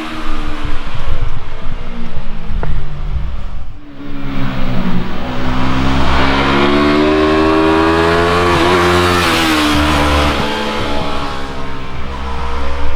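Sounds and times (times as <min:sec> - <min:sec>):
motorcycle engine revving: 0:00.0 - 0:12.9.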